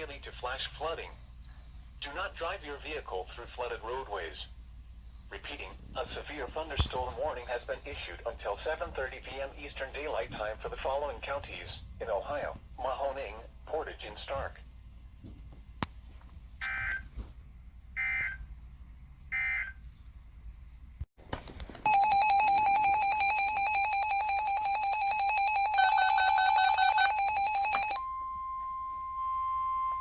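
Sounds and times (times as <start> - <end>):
steady single-pitched tone: 28.0 - 30.0.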